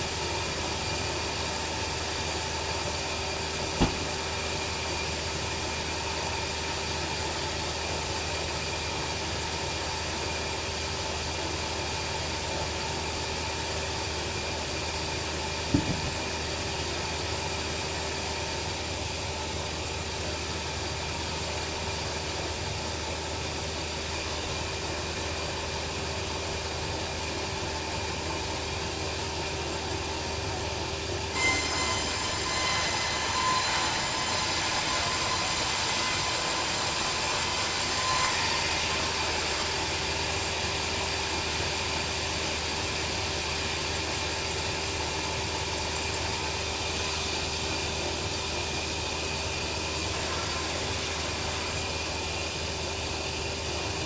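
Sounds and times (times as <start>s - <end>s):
bandsaw humming and whining: 0.0s - 54.0s
sharp knocks: 3.8s - 4.2s, 15.7s - 16.2s.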